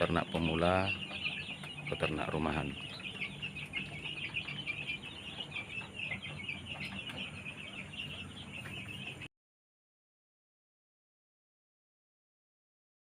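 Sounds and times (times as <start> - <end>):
chickens peeping: 0.0 - 9.3.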